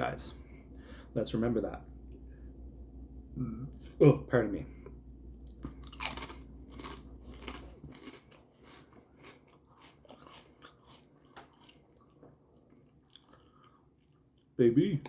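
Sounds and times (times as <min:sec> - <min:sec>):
chewing with wet mouth clicks: 0:05.4 - 0:14.6.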